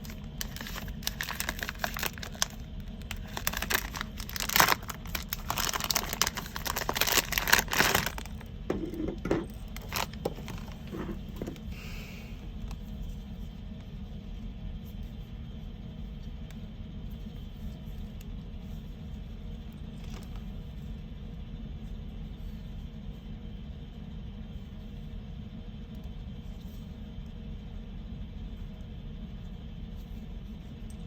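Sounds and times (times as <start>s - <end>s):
packaging crinkling and tearing: 0.0s - 8.5s, 9.4s - 11.7s
steady low hum: 0.0s - 31.0s.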